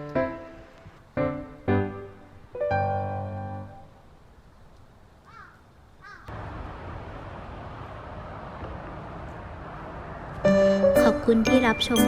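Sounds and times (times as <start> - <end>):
outdoor hiss: 0.0 - 10.9
harsh bird calls: 5.3 - 6.3.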